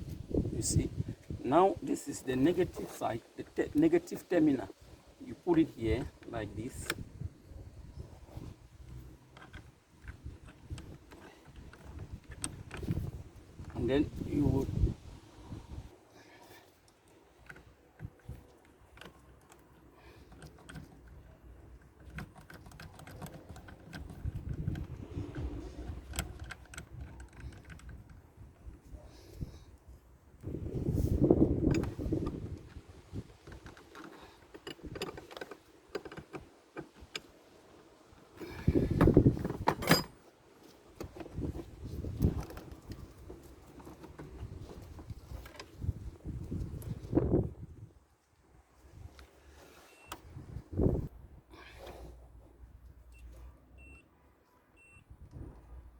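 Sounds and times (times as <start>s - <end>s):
metal parts clicking and tapping: 17.4s - 28.7s, 33.4s - 37.3s
hardware rattling: 38.4s - 40.2s.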